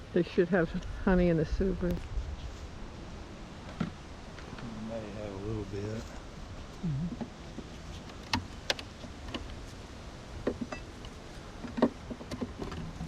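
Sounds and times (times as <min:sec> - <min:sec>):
wooden frames clicking and knocking: 0:11.6 - 0:13.0.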